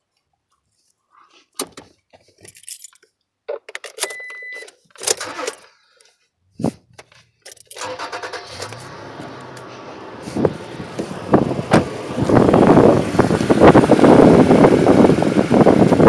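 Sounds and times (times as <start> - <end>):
pickup truck engine starting: 5.2 - 5.5, 7.8 - 16.0.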